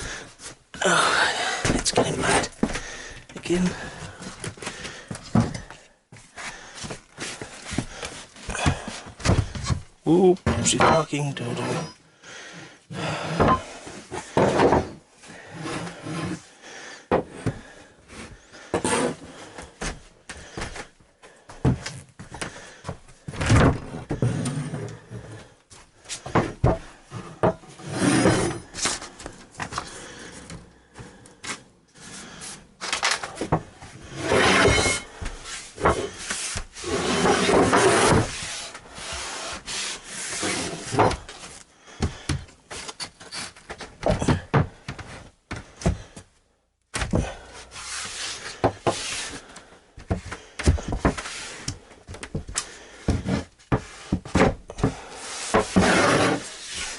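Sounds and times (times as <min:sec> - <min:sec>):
knocks and thumps: 0:08.5 - 0:11.0, 0:43.8 - 0:46.1
wood scraping against wood: 0:10.5 - 0:12.0, 0:18.1 - 0:19.6, 0:26.1 - 0:32.6, 0:33.2 - 0:41.6, 0:47.2 - 0:56.9.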